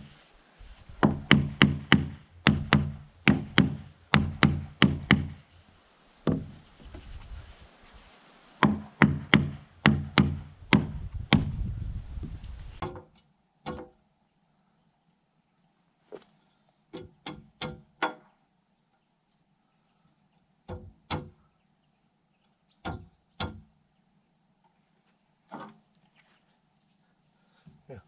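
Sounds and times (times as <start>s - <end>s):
hammer blows on wood: 0.9s - 5.5s, 8.6s - 13.0s.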